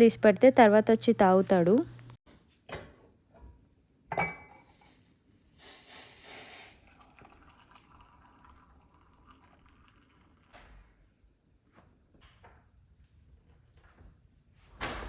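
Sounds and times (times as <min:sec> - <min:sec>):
cup clinking: 0:04.1 - 0:04.7
tea pouring into a cup: 0:06.0 - 0:10.7.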